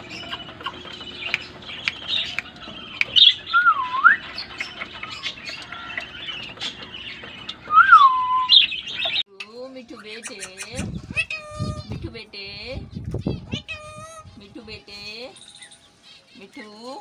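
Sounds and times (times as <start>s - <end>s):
birds chirping and clicking: 0.0s - 17.0s
whistle dipping and rising: 3.5s - 4.2s, 7.7s - 8.6s
parrot talking: 9.8s - 12.2s, 13.1s - 15.2s.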